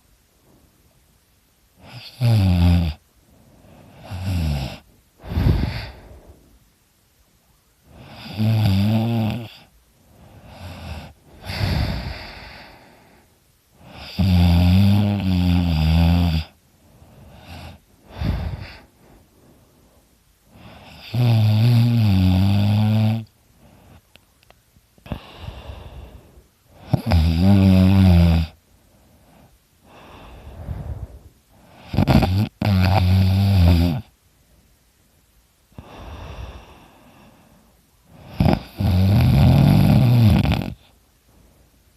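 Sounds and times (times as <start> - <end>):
quiet breaths: 0.0 - 41.9
man snoring heavily: 1.8 - 3.0, 3.9 - 6.3, 7.9 - 9.7, 10.4 - 13.2, 13.8 - 16.6, 17.3 - 18.9, 20.5 - 23.3, 26.8 - 28.6, 29.9 - 34.1, 35.8 - 37.3, 38.1 - 40.9.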